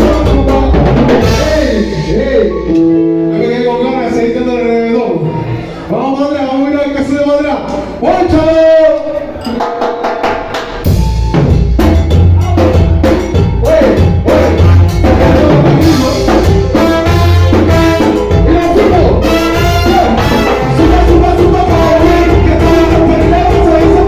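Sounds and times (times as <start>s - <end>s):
live latin band music: 0.0s - 24.0s.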